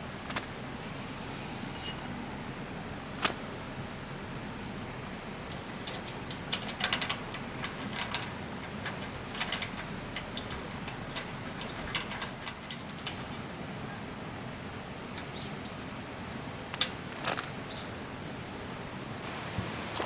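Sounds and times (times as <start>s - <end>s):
low background hiss: 0.0s - 20.0s
light clicks and clinks: 1.7s - 2.2s, 5.4s - 14.0s.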